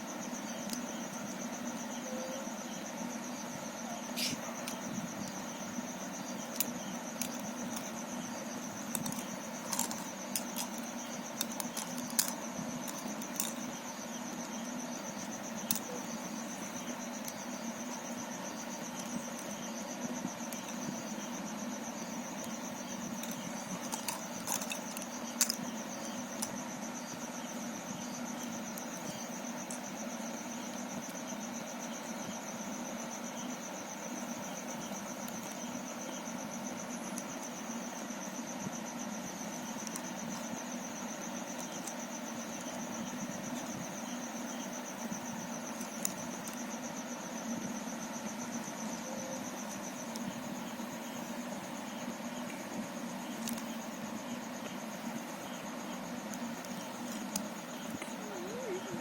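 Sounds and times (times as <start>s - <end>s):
plastic cube pieces clicking: 8.9s - 10.8s, 11.4s - 13.6s, 23.2s - 25.6s.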